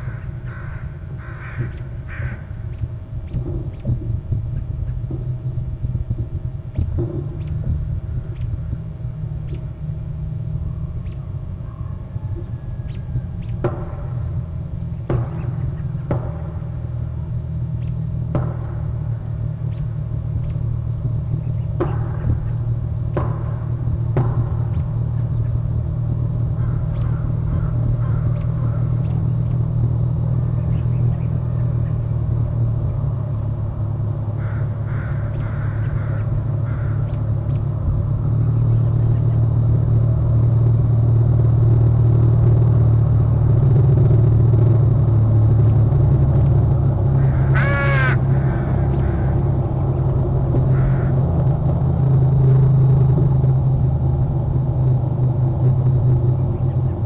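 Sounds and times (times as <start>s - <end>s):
low rumble: 0.0s - 57.0s
harsh bird call: 47.2s - 49.7s, 50.7s - 51.2s.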